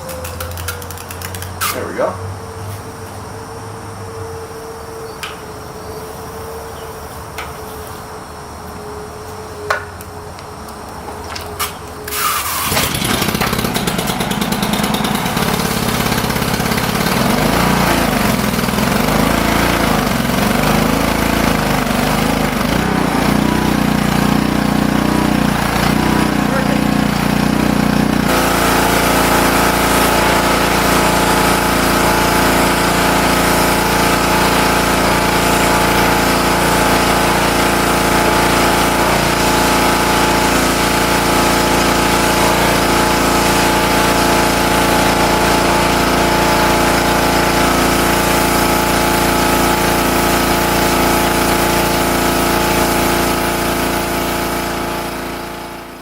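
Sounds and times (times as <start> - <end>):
small engine running: 0.0 - 2.4, 10.2 - 56.0.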